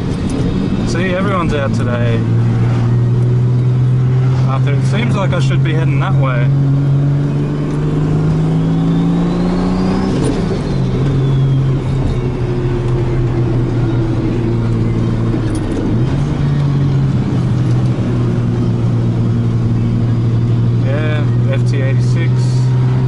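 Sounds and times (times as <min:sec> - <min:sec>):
turbocharged car engine running: 0:00.0 - 0:23.0
faint turbo whistle: 0:09.8 - 0:13.9.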